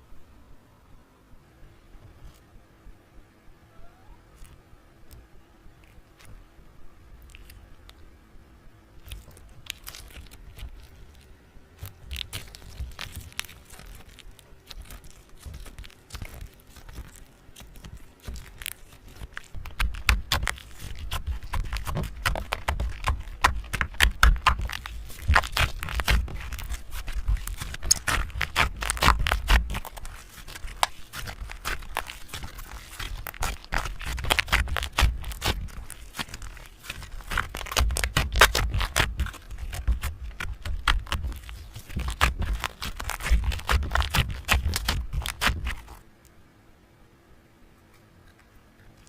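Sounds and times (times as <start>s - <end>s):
crackling and scraping: 5.8s - 6.4s, 7.2s - 8.1s, 8.9s - 46.4s.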